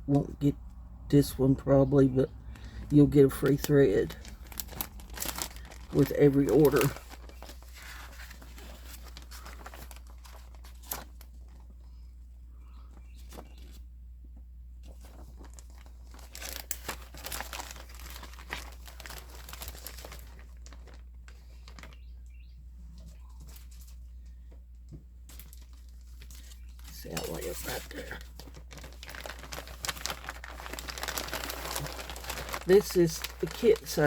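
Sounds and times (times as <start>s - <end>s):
packaging crinkling: 2.3s - 11.7s, 14.8s - 22.2s, 25.2s - 34.0s.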